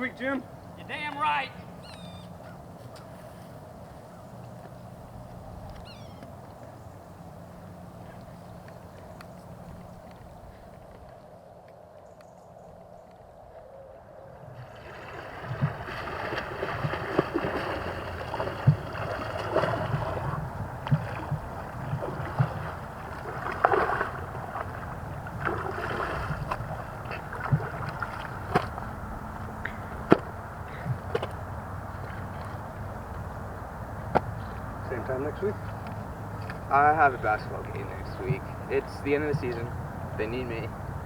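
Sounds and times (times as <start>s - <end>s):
water splashing and sloshing: 14.6s - 34.8s.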